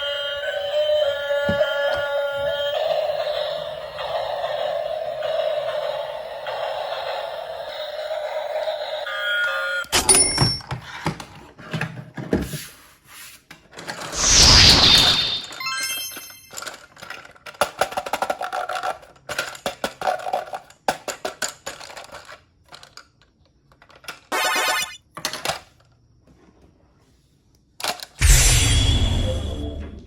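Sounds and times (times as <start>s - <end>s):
small clicks and clatter: 16.5s - 24.3s.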